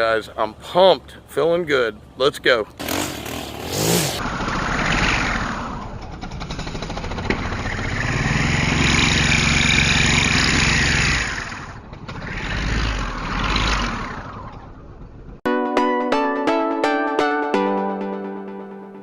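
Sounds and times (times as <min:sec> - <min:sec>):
lawn mower engine running: 0:02.8 - 0:15.3.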